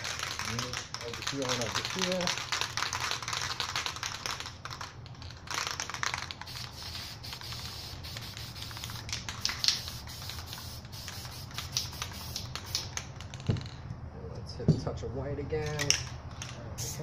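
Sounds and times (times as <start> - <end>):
spray-paint can hissing: 5.5 - 13.6, 16.8 - 17.0.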